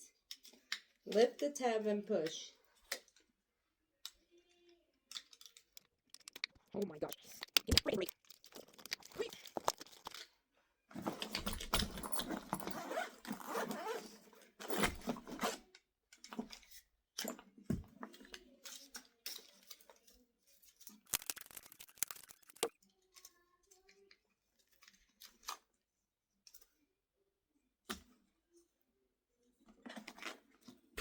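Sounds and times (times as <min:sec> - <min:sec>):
sharp plastic clicks and snaps: 0:05.1 - 0:10.3, 0:21.1 - 0:22.7
plastic packaging crinkling: 0:05.3 - 0:10.3, 0:21.0 - 0:22.7.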